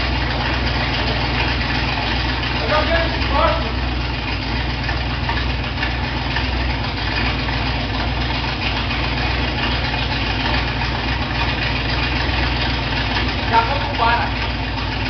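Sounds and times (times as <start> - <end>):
engine idling with low rumble: 0.0 - 15.0.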